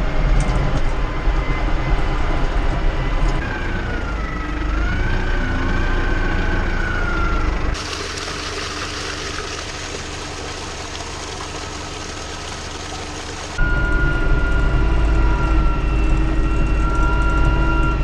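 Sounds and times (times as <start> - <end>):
farm machinery engine rumble: 7.2 - 16.8.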